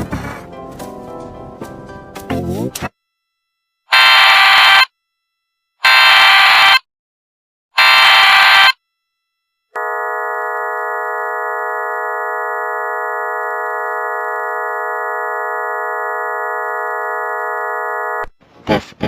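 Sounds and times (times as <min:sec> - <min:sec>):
loud steady alert tone chord: 0:09.8 - 0:18.2.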